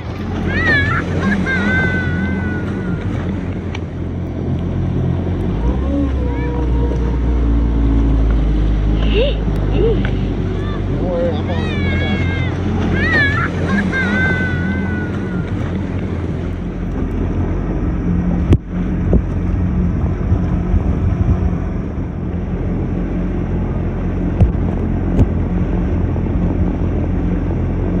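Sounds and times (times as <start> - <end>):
jet ski engine running: 0.0 - 28.0
wind noise on microphone: 17.2 - 23.1, 24.2 - 28.0.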